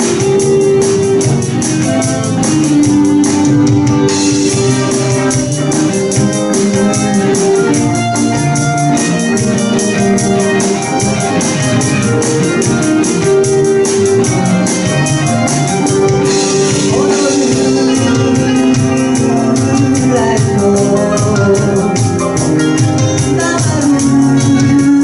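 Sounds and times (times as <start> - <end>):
bass guitar: 0.0 - 25.0
drums keeping a steady beat: 0.0 - 25.0
guitar: 0.0 - 25.0
keyboard: 0.0 - 25.0
person singing: 16.3 - 25.0.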